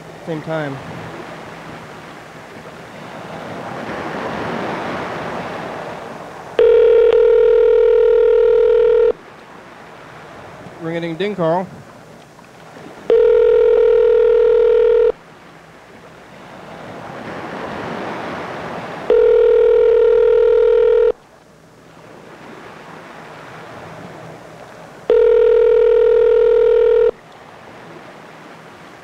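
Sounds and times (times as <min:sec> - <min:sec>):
telephone ringback tone: 0:06.6 - 0:09.2, 0:13.1 - 0:15.2, 0:19.1 - 0:21.2, 0:25.1 - 0:27.2.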